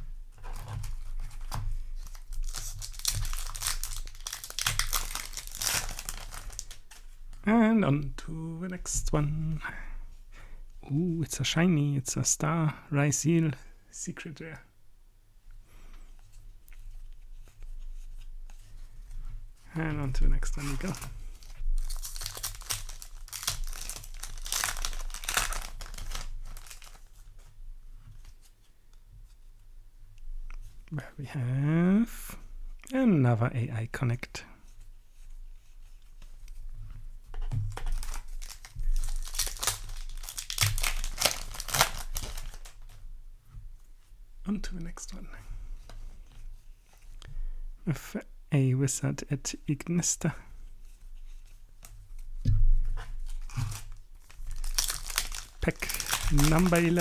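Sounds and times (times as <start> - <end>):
foil wrapper crinkling and tearing: 0.4 - 7.4, 20.0 - 27.4, 37.5 - 43.0, 53.3 - 57.0.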